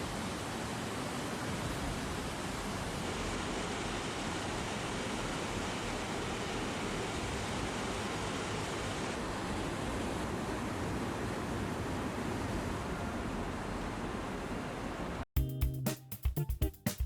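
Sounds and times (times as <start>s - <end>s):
fast-flowing water rushing: 0.0s - 15.2s.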